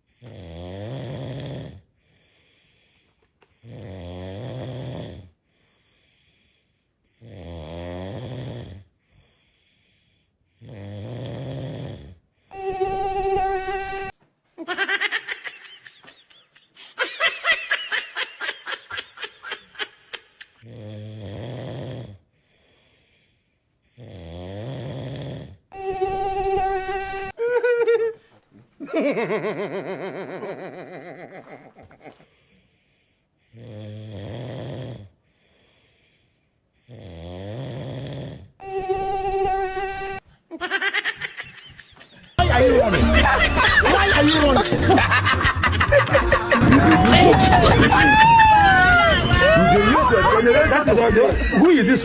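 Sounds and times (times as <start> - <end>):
man snoring loudly: 0.1 - 1.9, 3.6 - 5.4, 7.1 - 8.9, 10.6 - 14.1, 20.6 - 22.2, 24.0 - 27.2, 33.5 - 35.2, 36.9 - 39.1.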